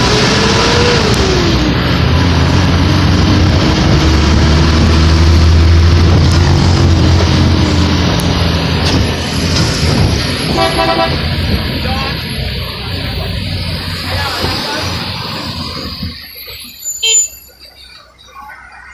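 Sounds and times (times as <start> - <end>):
road noise: 0.0 - 18.9
vehicle engine rumble: 0.0 - 18.9
vehicle horn tooting: 10.5 - 11.4, 17.0 - 17.5.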